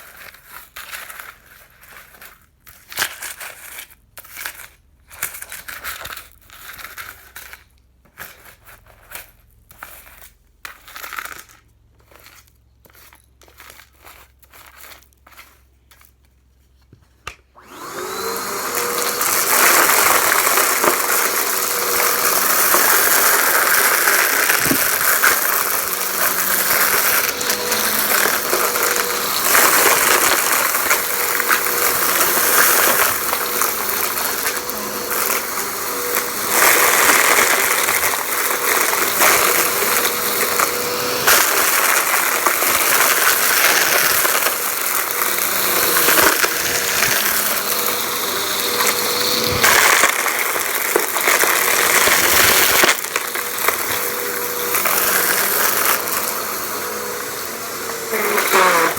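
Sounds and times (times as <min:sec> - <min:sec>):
debris rattling through vacuum: 0:17.6 - 0:58.9
vacuum cleaner motor whine: 0:17.6 - 0:58.9.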